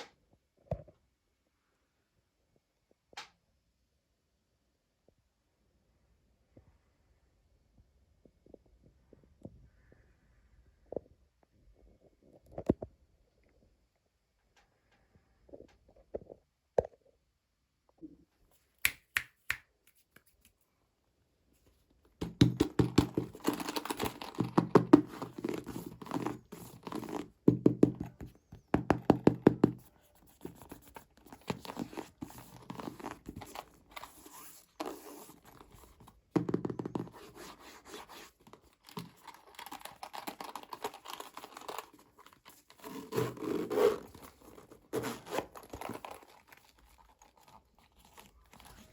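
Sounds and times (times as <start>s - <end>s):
taps and knocks on packaging: 22.2s - 25.6s, 27.5s - 29.9s
plastic and cardboard crinkling: 22.2s - 48.9s.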